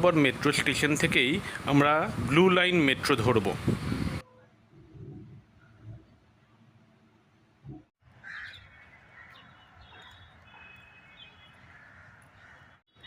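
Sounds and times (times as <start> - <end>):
outdoor background noise: 0.0 - 13.0
crows cawing: 8.2 - 10.0, 11.6 - 12.8
high bird calls: 8.2 - 13.0.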